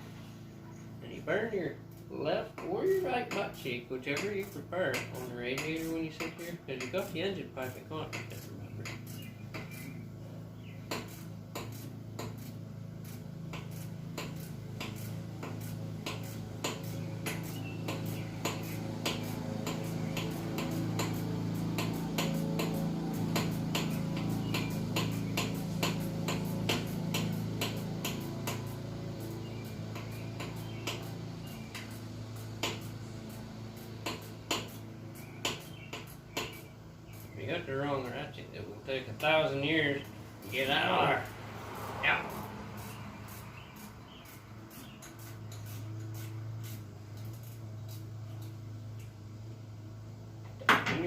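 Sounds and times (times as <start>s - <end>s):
steady low hum: 0.0s - 51.0s
hand ratchet clicking: 1.9s - 10.0s, 10.8s - 37.4s.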